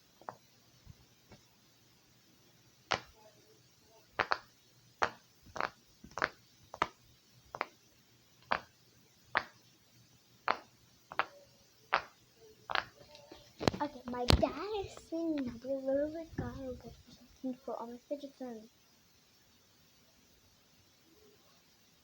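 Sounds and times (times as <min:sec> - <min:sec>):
fidget toy clicks: 0:04.2 - 0:07.8, 0:08.4 - 0:08.7, 0:10.5 - 0:14.4.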